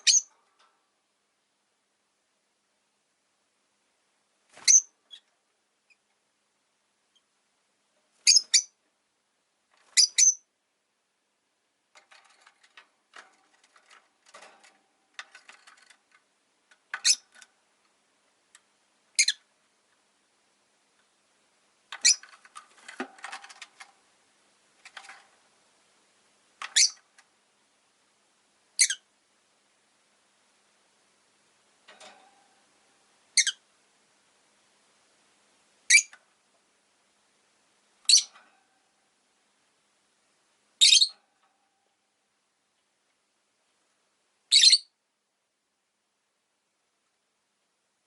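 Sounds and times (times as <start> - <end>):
shrill bird chirps: 0.0 - 0.3, 4.6 - 5.3, 8.2 - 8.8, 9.9 - 10.5, 19.2 - 19.4, 26.8 - 27.0, 28.8 - 29.0, 33.4 - 33.6, 35.9 - 36.1, 38.1 - 38.3, 40.8 - 41.2, 44.5 - 45.0.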